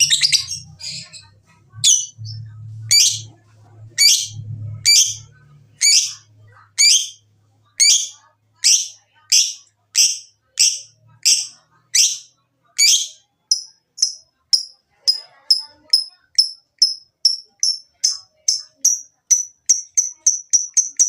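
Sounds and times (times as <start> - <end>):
lovebird high-pitched calls: 0.0 - 3.3, 4.0 - 7.2, 7.8 - 14.7.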